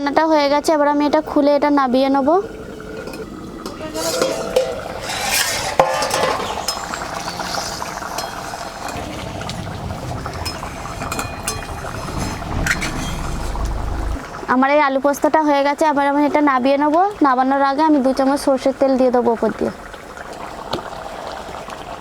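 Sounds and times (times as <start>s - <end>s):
pot lid clink: 3.0s - 9.0s, 10.4s - 13.0s
spoon stirring and clinking pan: 3.0s - 9.1s, 10.4s - 13.2s.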